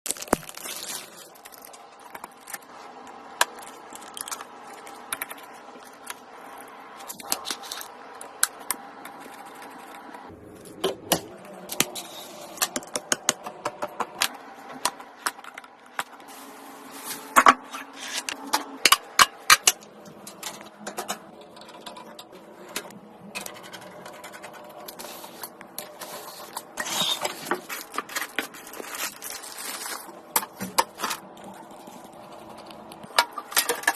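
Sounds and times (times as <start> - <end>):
computer parts clicking and scraping: 1.2 - 10.8, 17.3 - 28.9.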